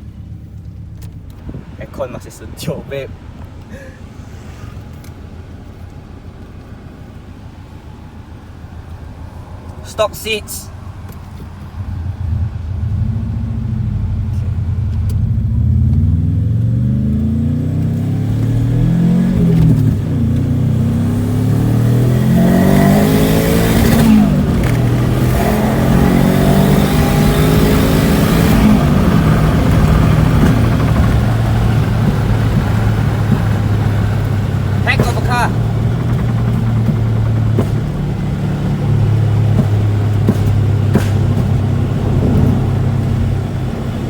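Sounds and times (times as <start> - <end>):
car engine accelerating through gears: 10.7 - 44.0.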